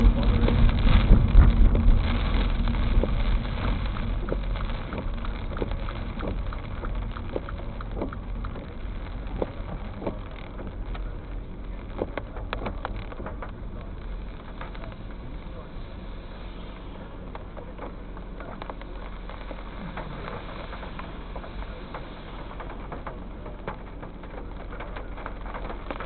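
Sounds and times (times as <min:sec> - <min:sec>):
vehicle engine: 0:00.0 - 0:26.0.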